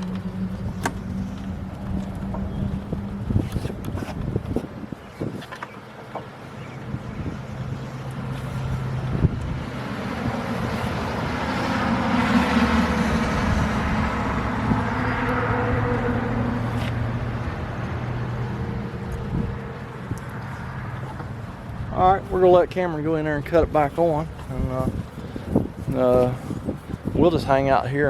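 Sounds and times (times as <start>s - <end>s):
vehicle passing by: 6.8s - 28.0s.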